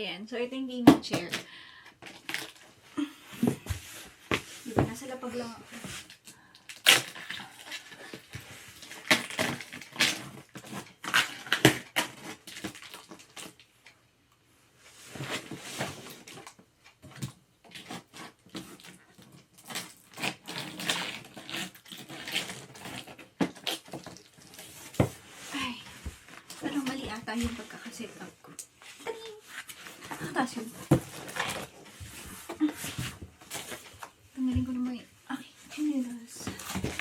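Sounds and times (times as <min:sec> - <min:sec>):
packaging rustling: 0:06.0 - 0:13.7, 0:15.2 - 0:34.2, 0:36.1 - 0:37.0.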